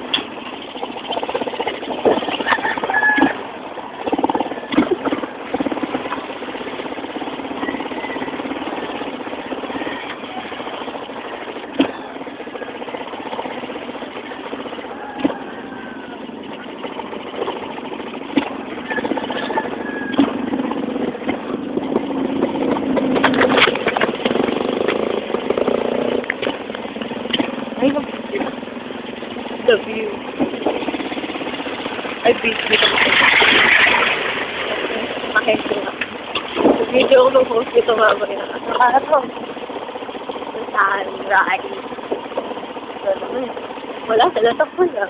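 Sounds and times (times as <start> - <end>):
motorcycle engine running: 0.0 - 45.0
clicks and rattles: 21.2 - 25.5.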